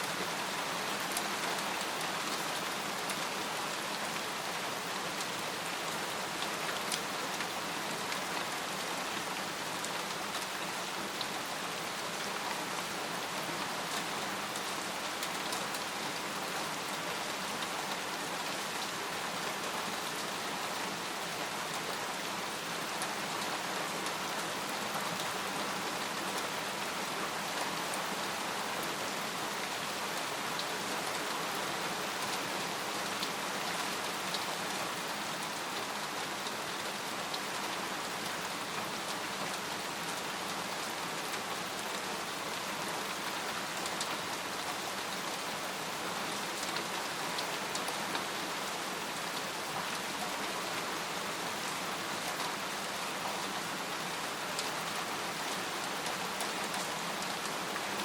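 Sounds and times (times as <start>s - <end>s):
rain falling on a tent: 0.0s - 58.0s.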